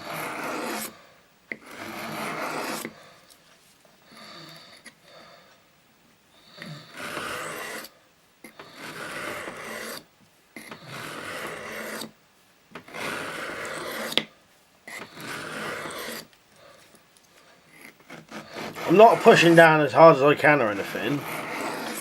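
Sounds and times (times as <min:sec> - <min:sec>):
knife rasping on whetstone: 0:00.0 - 0:00.9, 0:01.5 - 0:03.0, 0:06.6 - 0:12.2, 0:12.8 - 0:14.3, 0:14.9 - 0:16.3, 0:17.7 - 0:22.0.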